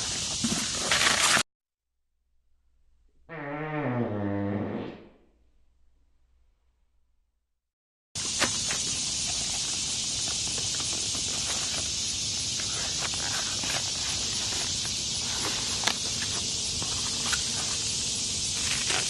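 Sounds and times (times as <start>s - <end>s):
parts and packaging rustling: 8.2s - 17.9s
high-pitched hiss: 8.2s - 19.0s.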